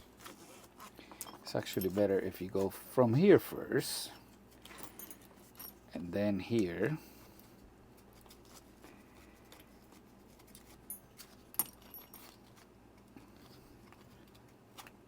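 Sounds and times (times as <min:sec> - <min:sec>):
light metallic tinks: 0:04.7 - 0:05.9.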